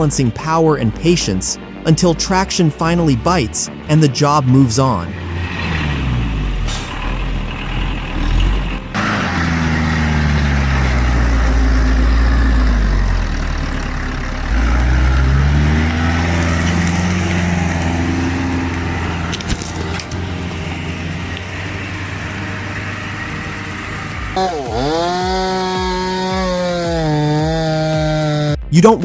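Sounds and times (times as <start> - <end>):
heavy truck engine revving: 5.0 - 28.8.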